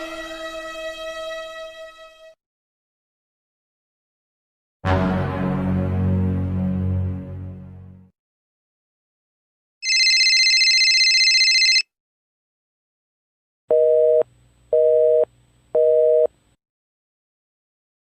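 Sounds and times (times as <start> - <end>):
telephone busy signal beeps: 9.9 - 11.8.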